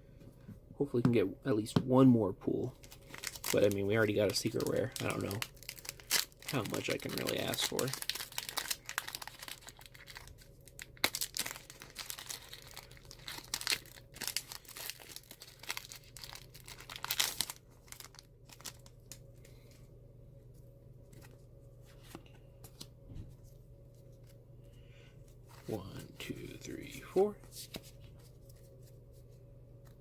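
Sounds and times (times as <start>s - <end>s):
wrapper crinkling and tearing: 2.8s - 19.6s.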